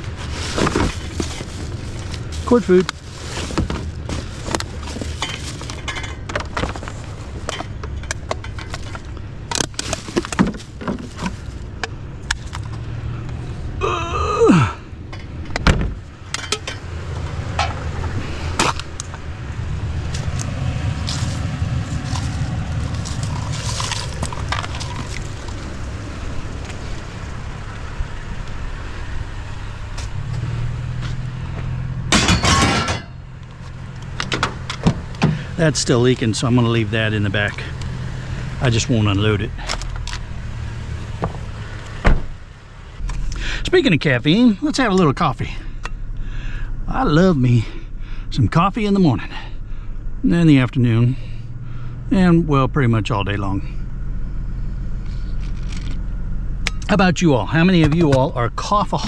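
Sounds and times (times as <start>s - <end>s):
scrap metal clattering: 0.0s - 7.8s, 32.1s - 33.2s
steady low rumble: 0.0s - 59.0s.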